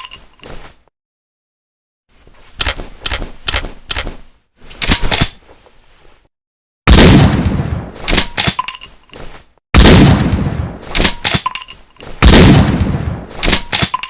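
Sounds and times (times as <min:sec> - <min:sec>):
loud gunshot with rolling tail: 0:06.9 - 0:07.9, 0:09.8 - 0:10.8, 0:12.2 - 0:13.3.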